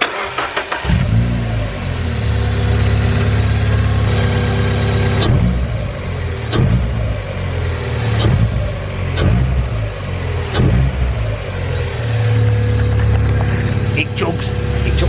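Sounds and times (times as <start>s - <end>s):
car engine revving: 0.0s - 15.0s.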